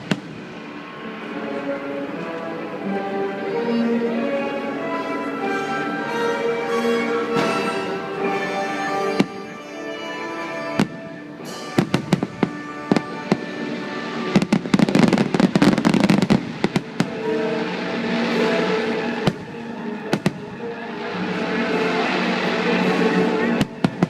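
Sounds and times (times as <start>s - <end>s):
firework bangs: 0.0s - 1.0s, 10.8s - 21.2s, 21.9s - 24.0s
firework crackling: 0.0s - 2.3s, 10.6s - 24.0s
orchestral music from speakers: 0.0s - 24.0s.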